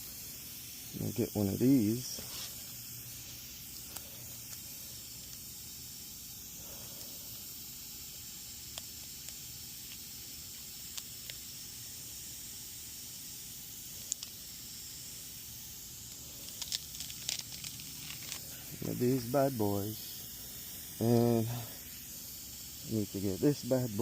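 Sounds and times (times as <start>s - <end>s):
steady high hiss: 0.0s - 24.0s.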